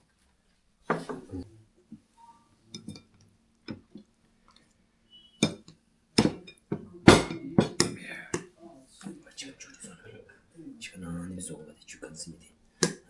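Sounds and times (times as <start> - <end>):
dishes and cutlery clinking: 2.7 - 4.0, 5.4 - 8.5.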